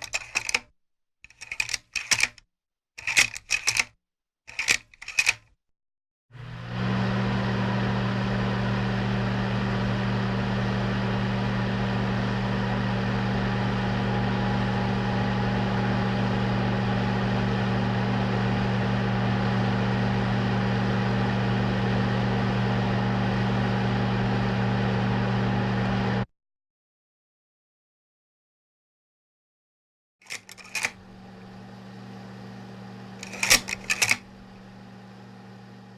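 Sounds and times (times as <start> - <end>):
film projector motor hum: 6.4 - 26.2, 30.3 - 35.9.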